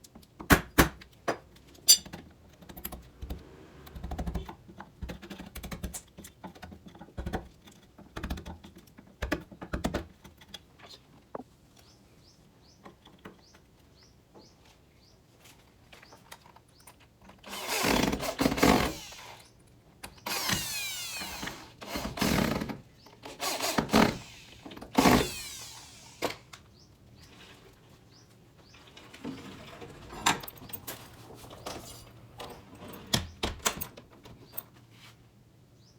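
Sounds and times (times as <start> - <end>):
power drill motor: 17.4 - 19.5, 20.2 - 26.6.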